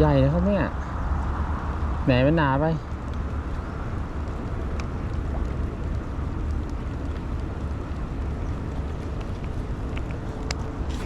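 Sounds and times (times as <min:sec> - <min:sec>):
faint ticks: 0:02.9 - 0:11.0.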